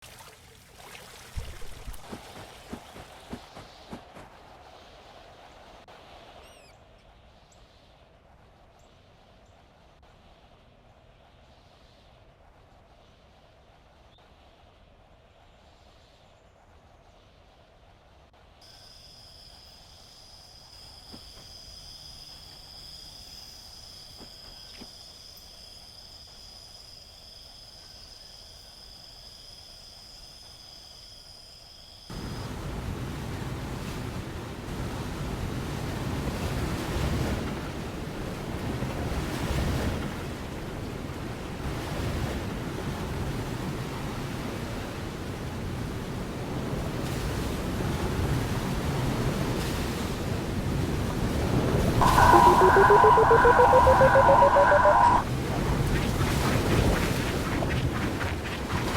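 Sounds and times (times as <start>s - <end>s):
loud rushing noise: 52.0s - 55.3s
high-pitched whine: 52.0s - 55.4s.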